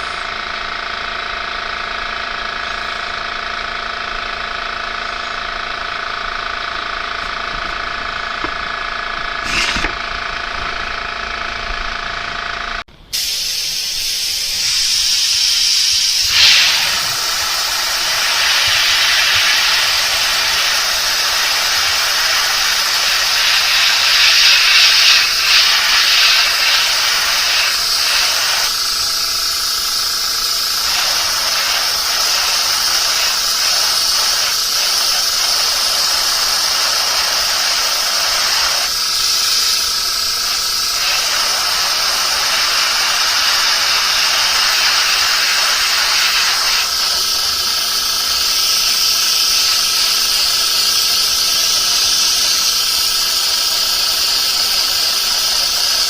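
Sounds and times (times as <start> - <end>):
motor hum: 0.0 - 12.8, 16.2 - 56.0
spraying air hiss: 9.4 - 9.9, 13.1 - 56.0.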